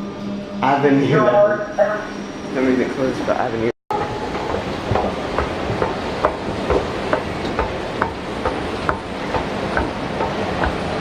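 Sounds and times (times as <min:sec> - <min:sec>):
footsteps walking: 0:04.0 - 0:09.1.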